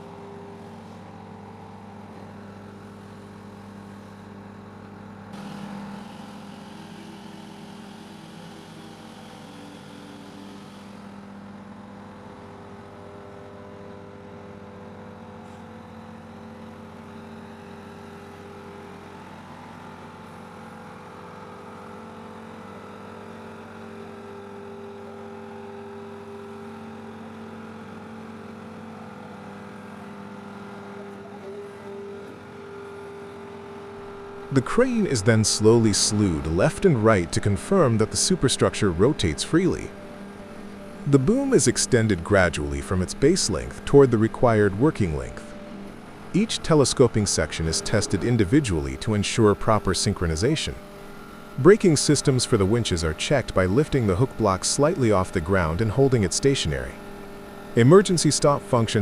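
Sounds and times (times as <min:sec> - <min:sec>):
heavy machinery engine hum: 0:29.9 - 0:59.0.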